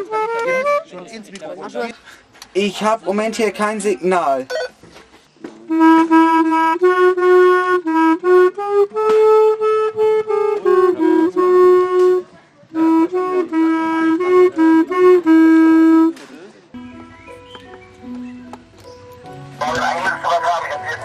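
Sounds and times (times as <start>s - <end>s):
clarinet playing slow melody: 0.0s - 1.0s, 5.7s - 16.2s.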